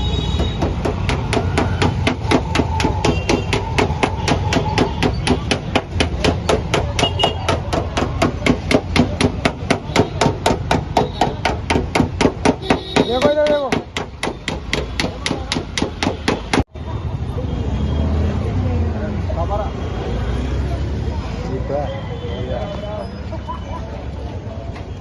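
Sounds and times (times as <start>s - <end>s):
hammer tapping on sheet metal: 0.4s - 16.7s.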